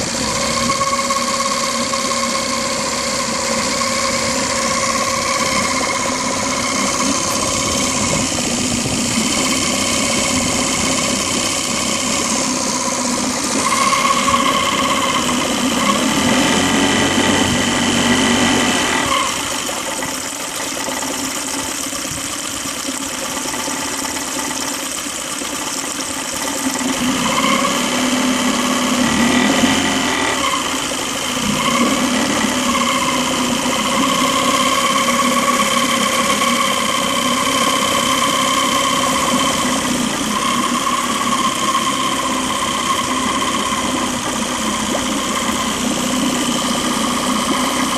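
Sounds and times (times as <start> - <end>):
outboard motor running: 0.0 - 47.9
steady whistle: 0.3 - 2.7, 12.8 - 16.0, 38.1 - 44.1.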